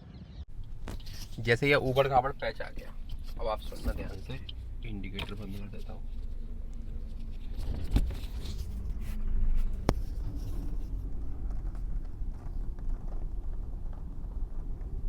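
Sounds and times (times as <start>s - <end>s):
low rumble of road noise: 0.0s - 15.0s
car interior rattles and knocks: 0.5s - 6.1s, 9.8s - 15.0s.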